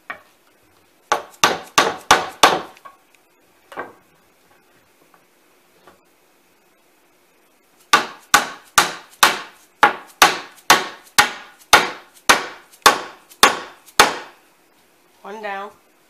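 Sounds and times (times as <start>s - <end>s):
hammer striking wood: 1.1s - 2.8s, 7.9s - 14.4s.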